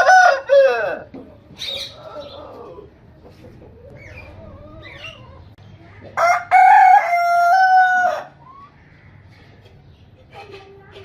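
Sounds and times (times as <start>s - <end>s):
rooster crowing: 0.0s - 1.1s, 6.2s - 8.4s
soft wavering bird calls: 1.5s - 3.0s, 3.7s - 5.6s.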